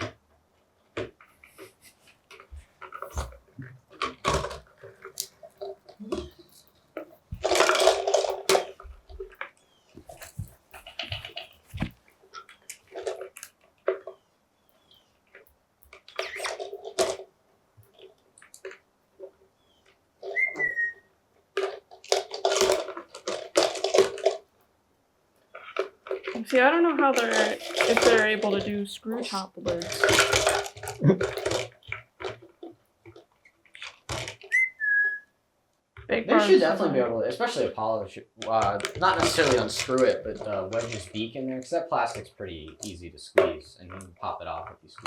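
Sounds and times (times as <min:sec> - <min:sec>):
birds pecking plastic bottle: 0:00.0 - 0:24.7, 0:25.4 - 0:35.2, 0:38.4 - 0:45.0
parrot whistling: 0:20.3 - 0:21.1, 0:34.5 - 0:35.4.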